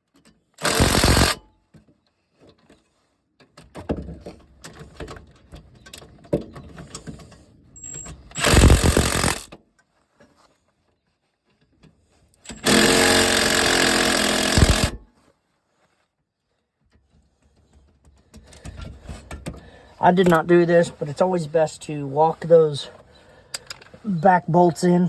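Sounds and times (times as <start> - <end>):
impact wrench hammering: 0.6 - 1.4, 8.4 - 9.5, 12.5 - 15.0.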